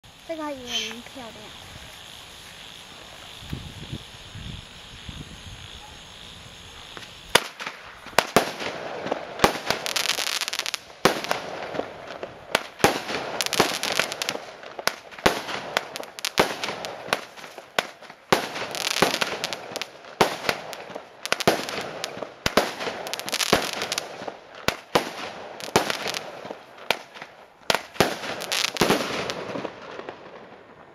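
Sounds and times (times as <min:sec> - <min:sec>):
fireworks crackling and hissing: 0:00.0 - 0:30.9
fireworks bangs: 0:05.6 - 0:30.9.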